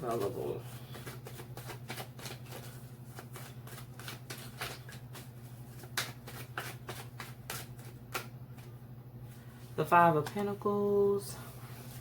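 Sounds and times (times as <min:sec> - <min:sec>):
cards being shuffled: 0:00.0 - 0:08.8.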